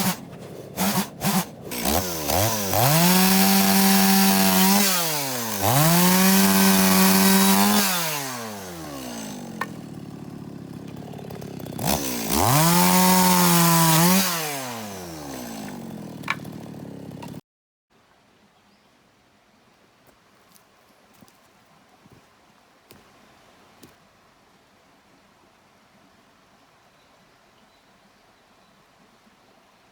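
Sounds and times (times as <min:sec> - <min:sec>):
chainsaw revving and idling: 0:00.0 - 0:17.4.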